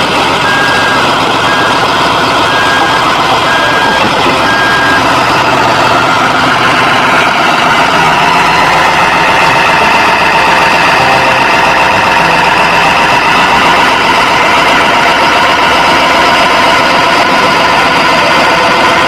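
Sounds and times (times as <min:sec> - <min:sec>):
diesel engine running: 0:00.0 - 0:19.0
steady whine: 0:00.0 - 0:19.0
warning alarm beeping: 0:00.4 - 0:14.8.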